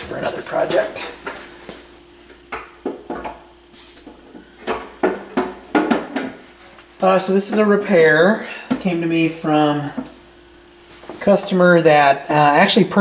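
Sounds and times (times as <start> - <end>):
faint steady hum: 0.0 - 13.0
objects knocking on a workbench: 4.6 - 6.4.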